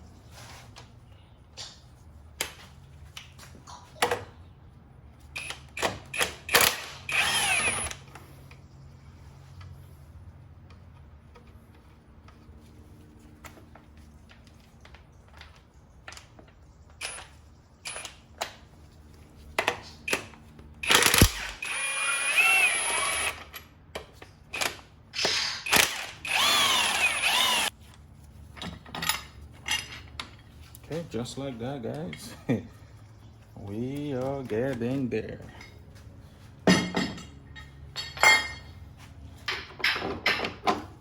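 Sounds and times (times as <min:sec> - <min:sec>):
handheld power tool running: 0:05.4 - 0:08.0, 0:20.8 - 0:23.6, 0:24.6 - 0:27.7.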